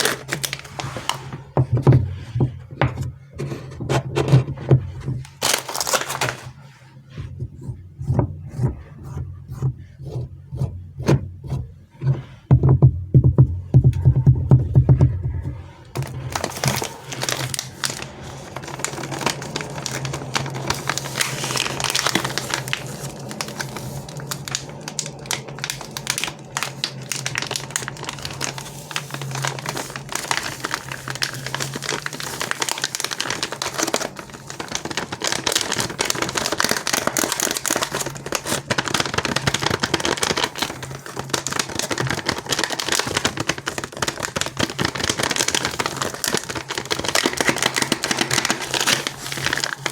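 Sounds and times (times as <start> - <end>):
candy wrappers crinkling: 0.0 - 1.5, 5.2 - 6.7, 15.9 - 49.9.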